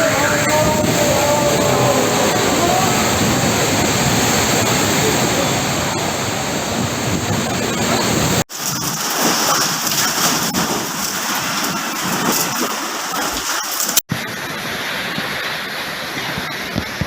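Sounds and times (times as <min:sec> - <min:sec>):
heavy rain pouring: 0:00.0 - 0:17.0.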